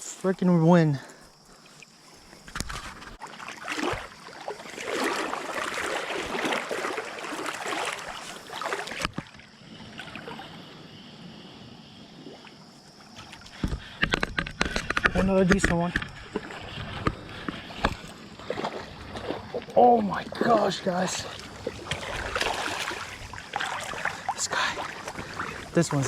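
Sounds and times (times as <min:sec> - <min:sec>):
creek water splashing: 0:00.0 - 0:10.9, 0:11.9 - 0:26.0
water flowing hiss: 0:19.8 - 0:26.0.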